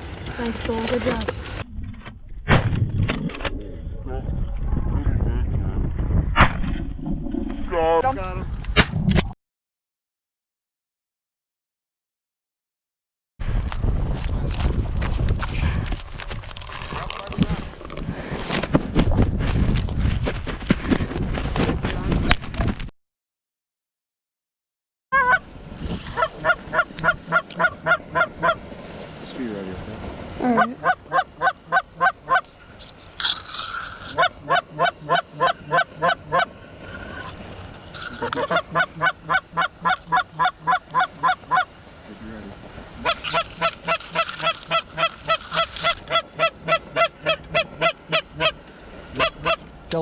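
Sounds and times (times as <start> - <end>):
goose call honks and clucks: 25.1 - 25.5, 26.1 - 28.6, 30.4 - 32.6, 33.2 - 36.6, 38.1 - 41.7, 43.0 - 49.7.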